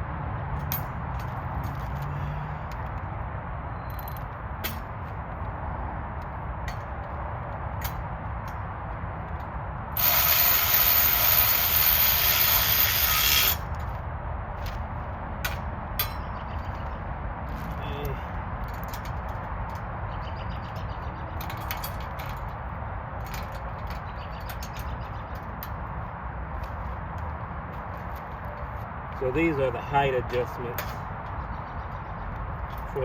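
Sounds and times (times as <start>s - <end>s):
loud steady hiss: 10.0s - 13.6s.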